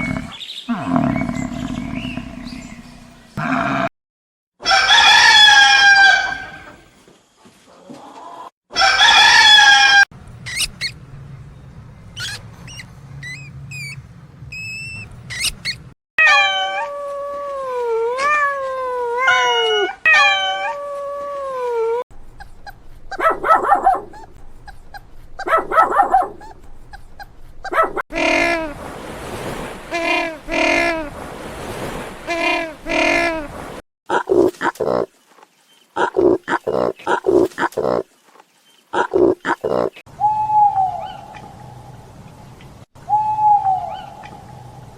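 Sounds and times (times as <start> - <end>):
dog whining and howling: 16.2 - 22.0.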